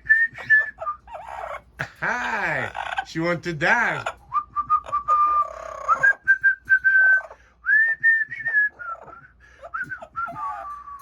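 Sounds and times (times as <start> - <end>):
person whistling a tune: 0.0 - 1.0, 4.3 - 11.0.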